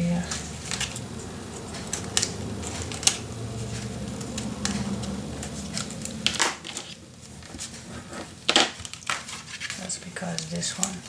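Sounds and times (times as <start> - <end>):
steady low hum: 0.0 - 8.5
paper rustling: 0.0 - 11.0.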